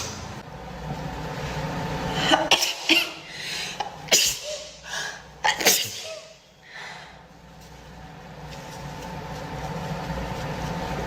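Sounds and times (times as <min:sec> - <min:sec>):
woman sneezing: 0:02.2 - 0:03.3, 0:03.9 - 0:06.5.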